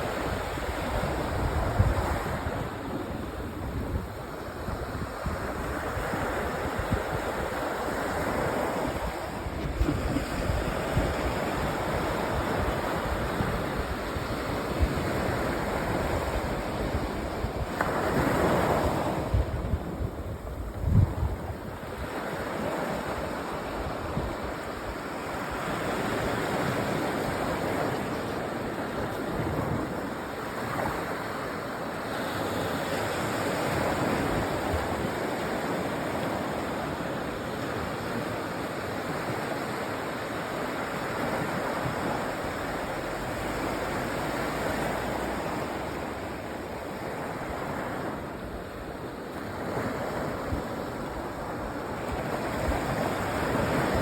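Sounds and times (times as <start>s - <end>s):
wind rumble on microphone: 0.0s - 39.9s
waves washing onto beach: 0.0s - 54.0s.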